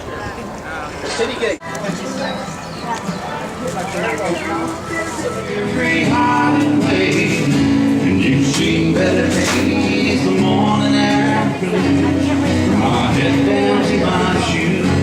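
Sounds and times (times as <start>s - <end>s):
guitar chords: 3.6s - 15.0s.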